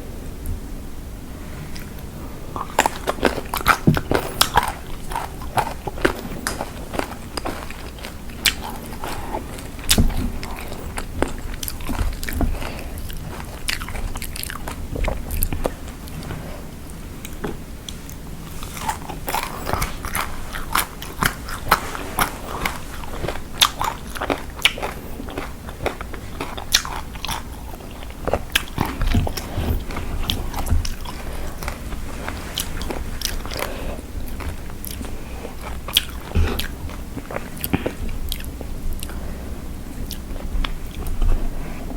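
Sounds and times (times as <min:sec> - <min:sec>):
person chewing crunchy food: 0:01.7 - 0:39.4.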